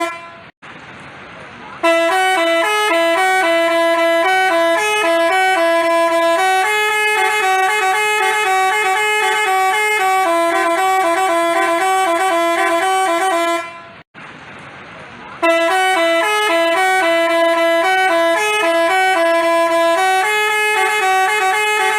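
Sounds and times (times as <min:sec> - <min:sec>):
multi-tone bus horn playing a tune: 0:00.0 - 0:00.6, 0:01.8 - 0:14.1, 0:15.4 - 0:21.9.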